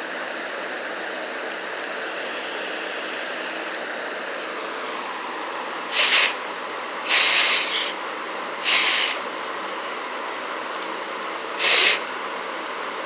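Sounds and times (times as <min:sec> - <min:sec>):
breathy puffs of air: 0:05.9 - 0:06.4, 0:08.6 - 0:09.2, 0:11.6 - 0:12.1.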